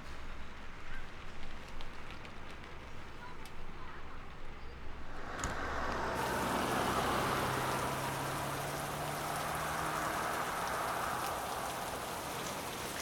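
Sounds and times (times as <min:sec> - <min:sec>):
rushing water: 0:05.0 - 0:13.0.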